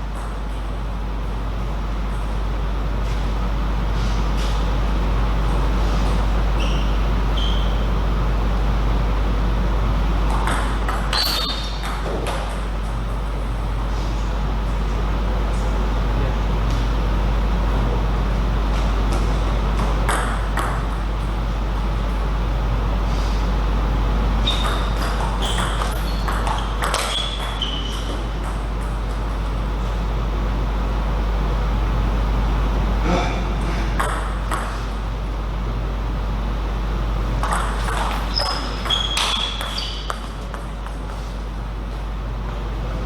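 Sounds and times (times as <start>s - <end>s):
steady low hum: 0.0s - 43.0s
shoe squeaks: 6.0s - 7.9s, 11.1s - 12.0s, 24.4s - 28.4s, 37.8s - 41.3s.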